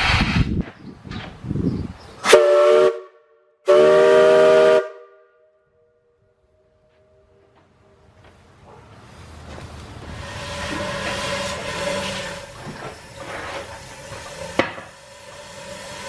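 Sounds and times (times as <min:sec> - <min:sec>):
rush of steam: 0:00.0 - 0:00.6, 0:09.0 - 0:16.0
steam whistle blasts: 0:02.2 - 0:05.5, 0:10.1 - 0:16.0.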